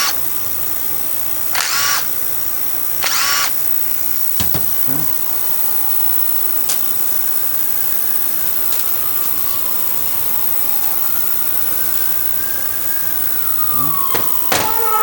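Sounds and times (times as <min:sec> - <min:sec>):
steady machine noise: 0:00.0 - 0:15.0
faint drifting tone: 0:08.1 - 0:15.0.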